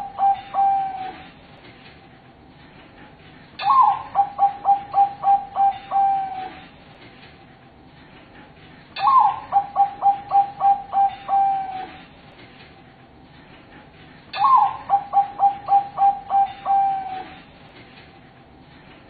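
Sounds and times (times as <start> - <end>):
dove cooing: 0.0 - 1.3, 3.6 - 6.6, 9.0 - 12.0, 14.4 - 17.4.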